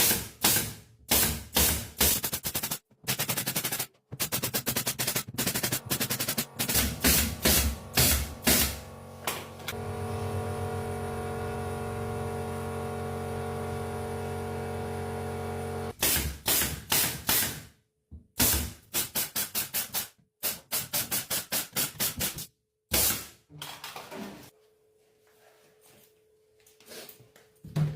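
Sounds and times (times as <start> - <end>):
sharp rapid strikes: 0.0 - 8.8
machine hum: 5.4 - 15.9.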